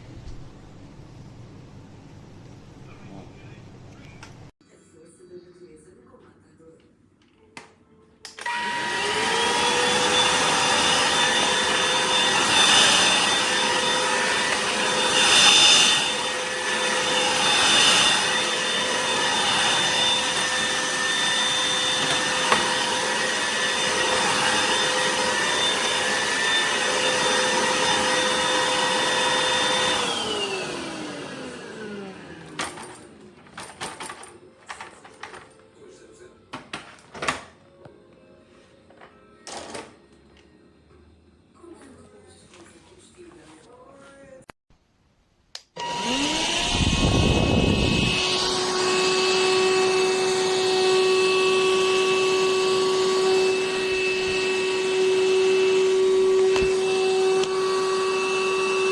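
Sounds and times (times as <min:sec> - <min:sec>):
vacuum motor whining: 0:08.3 - 0:33.8, 0:45.8 - 0:58.9
rushing air: 0:46.4 - 0:48.6.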